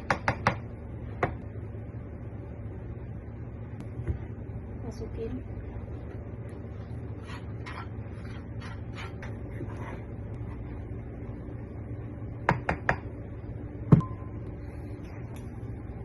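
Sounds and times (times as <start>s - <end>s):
steady low hum: 0.0s - 16.0s
dough stirred in a bowl: 6.7s - 10.9s.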